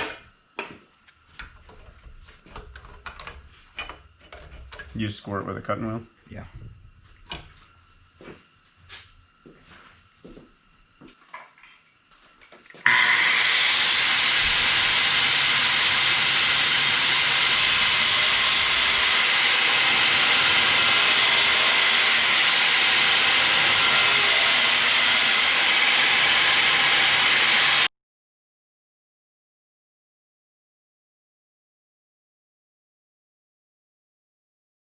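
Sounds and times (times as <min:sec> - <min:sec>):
angle grinder cutting metal: 0:12.8 - 0:27.9.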